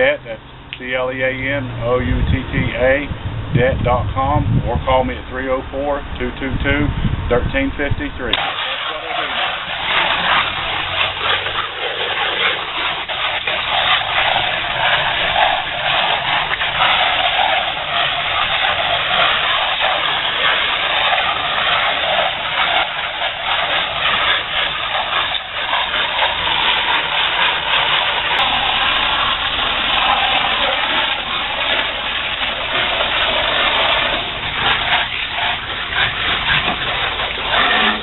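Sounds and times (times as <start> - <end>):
pressure washer motor rumble: 0.0 - 38.0
water spray hissing: 8.3 - 38.0.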